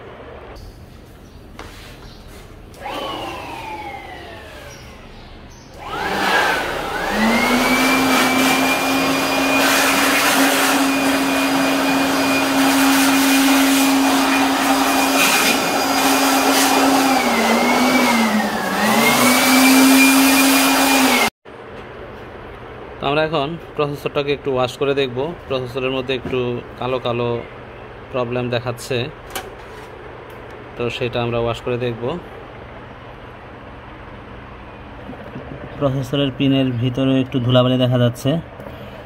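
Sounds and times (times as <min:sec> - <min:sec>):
electric dust cleaner motor whine: 0:02.7 - 0:21.3.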